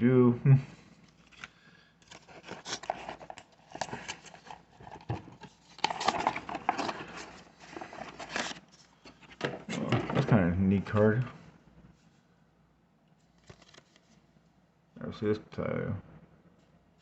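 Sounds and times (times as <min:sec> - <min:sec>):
trading cards flipped by hand: 0:13.3 - 0:14.2.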